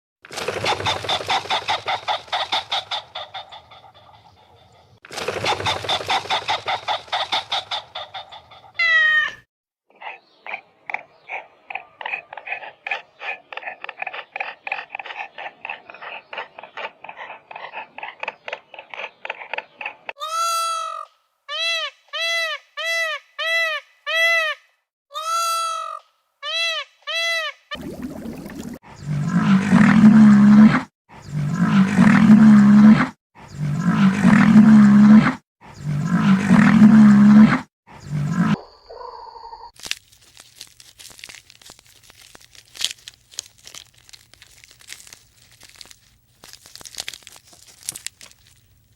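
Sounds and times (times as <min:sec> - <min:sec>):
chattering animal calls: 0:00.4 - 0:09.1, 0:09.9 - 0:20.1
high-pitched animal calls: 0:05.6 - 0:09.4
deep animal roars: 0:29.0 - 0:38.6.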